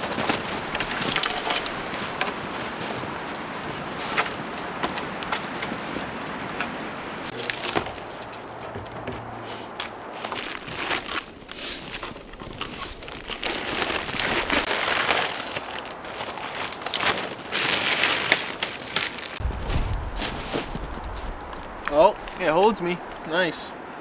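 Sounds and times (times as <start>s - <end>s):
dry branches snapping and cracking: 0.0s - 24.0s
steady hiss: 19.4s - 24.0s.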